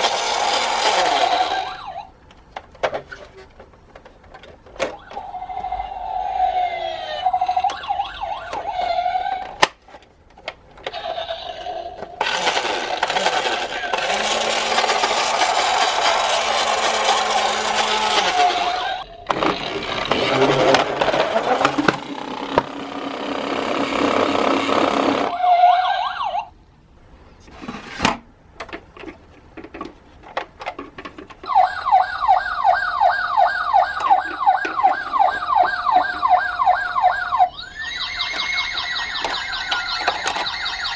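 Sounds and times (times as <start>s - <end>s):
toy siren wavering tone: 0.6s - 2.1s, 4.9s - 9.6s, 11.0s - 19.3s, 25.3s - 26.5s, 31.5s - 40.9s
toy siren fast yelp: 1.0s - 2.1s, 5.0s - 9.6s, 25.3s - 26.5s, 31.5s - 40.9s
loud noise: 12.2s - 25.4s.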